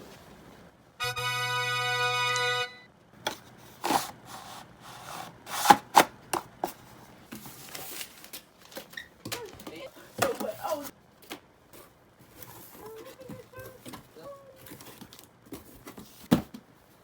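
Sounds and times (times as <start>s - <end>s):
steady musical tone: 1.0s - 2.9s.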